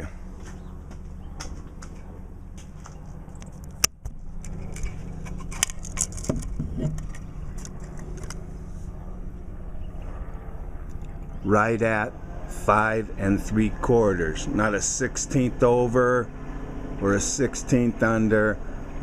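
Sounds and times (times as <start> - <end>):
steady low hum: 0.0 - 19.0
camera handling clicks and rustles: 2.8 - 8.5.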